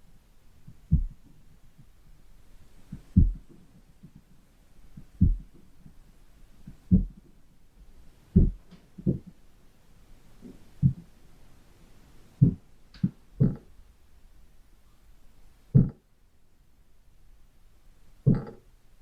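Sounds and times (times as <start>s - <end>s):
dull low thumps: 0.6s - 2.0s, 2.9s - 4.3s, 4.9s - 5.6s, 6.7s - 7.4s, 8.3s - 9.4s, 10.4s - 11.1s, 12.4s - 13.7s, 15.7s - 16.0s, 18.2s - 18.6s.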